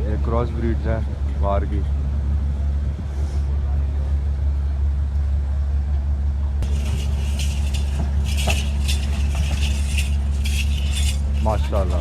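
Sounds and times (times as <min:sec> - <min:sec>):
low mechanical hum: 0:00.0 - 0:12.0
light rattling jingle: 0:06.6 - 0:12.0.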